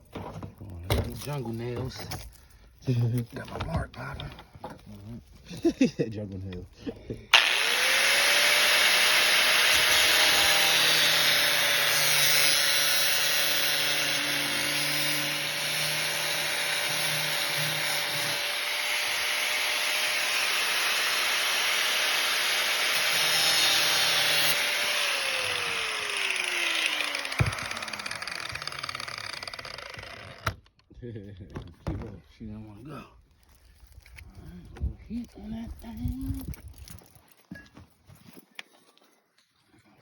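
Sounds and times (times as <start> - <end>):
power tool motor whining: 7.3 - 30.7.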